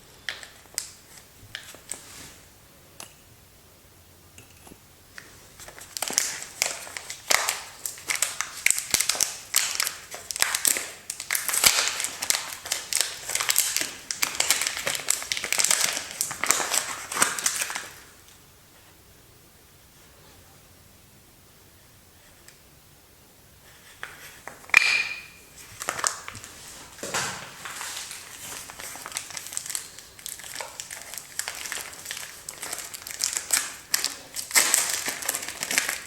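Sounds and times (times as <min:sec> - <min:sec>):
wrapper crinkling and rustling: 0:05.6 - 0:18.1, 0:24.4 - 0:36.0.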